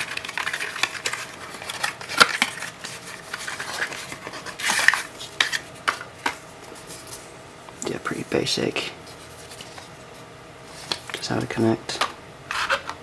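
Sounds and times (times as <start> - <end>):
paper rustling: 0.0 - 7.3, 9.0 - 11.5.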